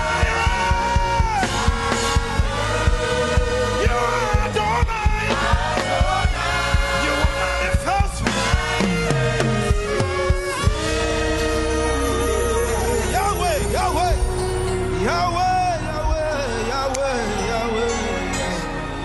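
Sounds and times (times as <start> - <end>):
drum beat: 0.0 - 10.9
keyboard chords: 0.0 - 19.0
person singing: 8.9 - 19.0.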